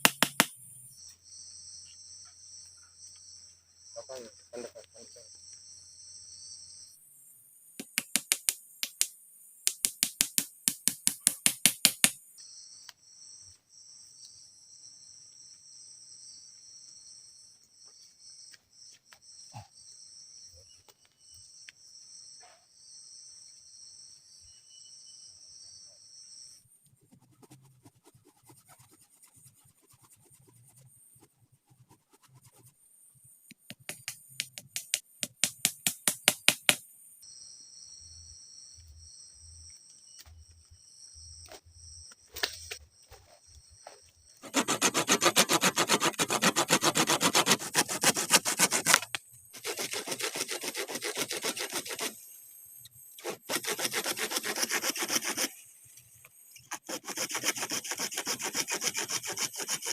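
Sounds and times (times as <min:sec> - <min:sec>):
insects chirring: 0:00.1 - 0:10.2.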